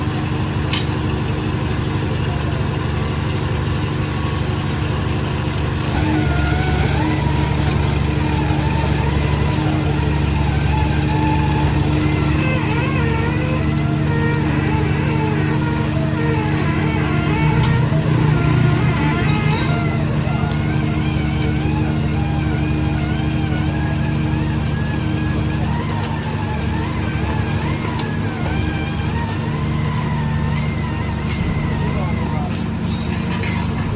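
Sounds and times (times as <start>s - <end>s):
diesel engines of paving machines: 0.0s - 33.9s
wavering higher sound: 5.9s - 32.4s.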